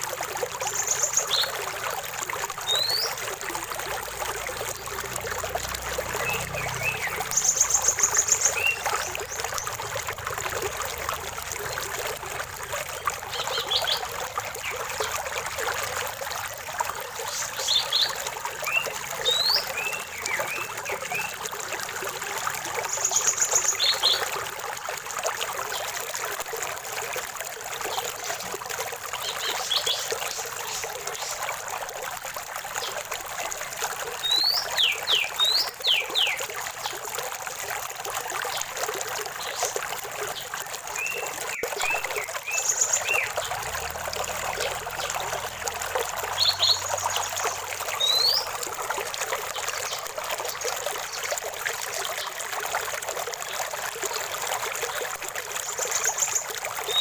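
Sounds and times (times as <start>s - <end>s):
stream trickling and babbling: 0.0s - 57.0s
songbirds calling: 0.6s - 1.6s, 2.7s - 3.2s, 4.8s - 9.9s, 12.6s - 15.8s, 17.2s - 21.4s, 34.2s - 36.4s, 39.3s - 48.6s, 55.6s - 57.0s.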